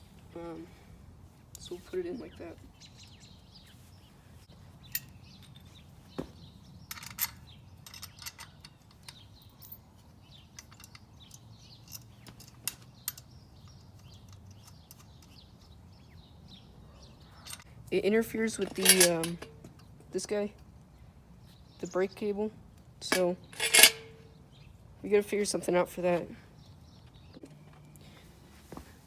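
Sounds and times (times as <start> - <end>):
light metal clicks and knocks: 6.8 - 15.8, 18.5 - 20.0, 23.0 - 24.3.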